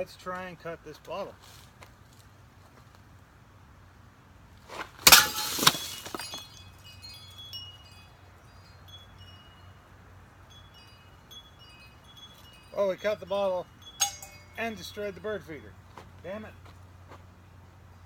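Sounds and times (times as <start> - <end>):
high chime-like tinkling: 6.1 - 15.4.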